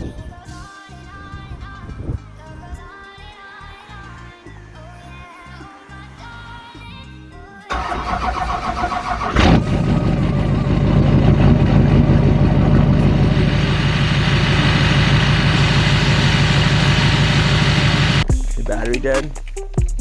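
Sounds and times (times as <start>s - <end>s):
electric starter cranking engine: 7.7s - 18.3s
engine idling: 7.7s - 18.3s.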